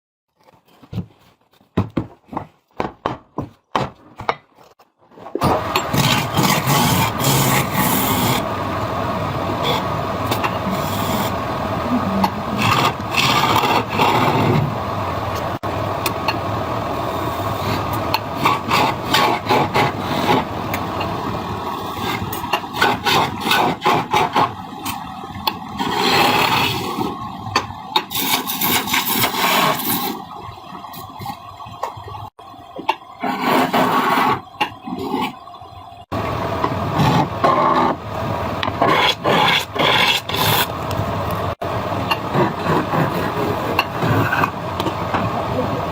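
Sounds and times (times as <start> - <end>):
lathe tool scraping spinning wood: 5.5 - 30.3, 33.2 - 35.4, 36.6 - 41.4, 42.0 - 44.6.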